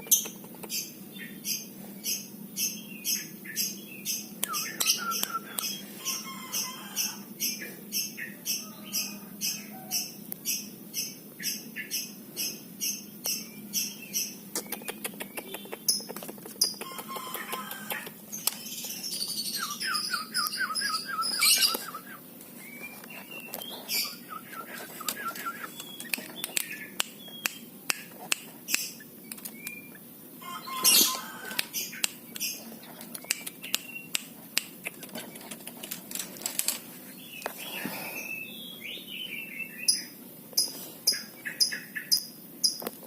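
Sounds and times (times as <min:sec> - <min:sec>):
bird chirping: 0:00.0 - 0:35.5, 0:37.1 - 0:42.9
sharp clicks: 0:25.0 - 0:29.8, 0:31.6 - 0:36.8.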